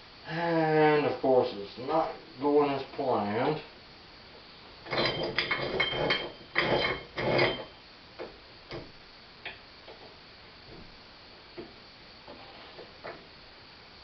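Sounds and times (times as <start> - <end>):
metal parts clinking and rattling: 4.9 - 7.7.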